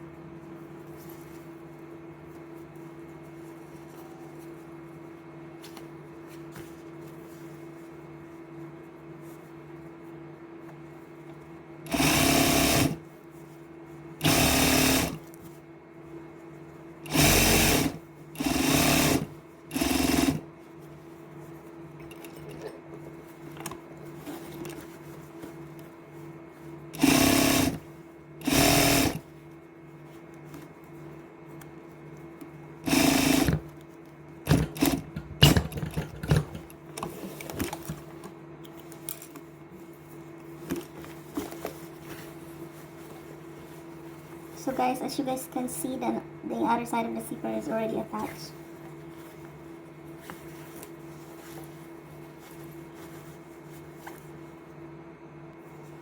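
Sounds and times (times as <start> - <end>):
sewing machine stitching: 11.9 - 13.0, 14.2 - 15.2, 17.0 - 20.4, 27.0 - 27.8, 28.4 - 29.2, 32.8 - 33.7, 34.4 - 36.6.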